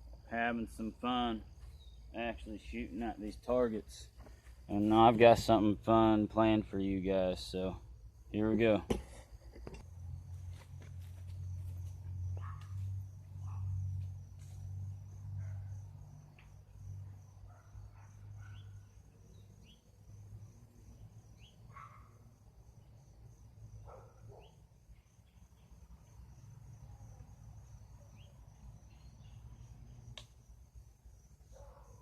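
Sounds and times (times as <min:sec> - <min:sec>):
crickets droning: 0:00.0 - 0:32.0
bird chirps: 0:01.6 - 0:02.1, 0:18.4 - 0:19.9, 0:21.4 - 0:21.6.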